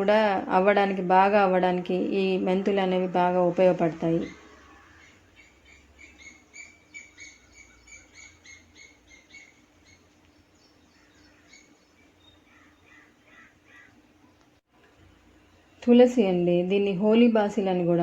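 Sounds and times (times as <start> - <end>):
bird chirping: 4.1 - 14.5.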